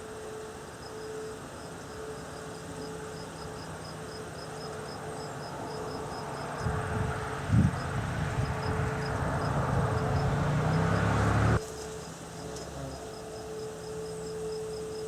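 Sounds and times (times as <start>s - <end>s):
distant warning sirens: 0.0s - 11.6s
insect chirping: 0.0s - 15.0s.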